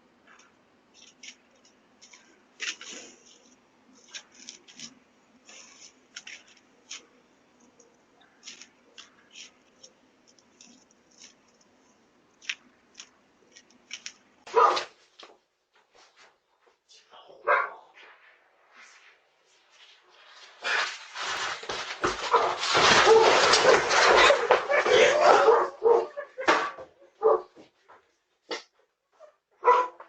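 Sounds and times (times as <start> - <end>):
faint hum: 0.0 - 28.4
loud metal clatter: 20.8 - 25.2.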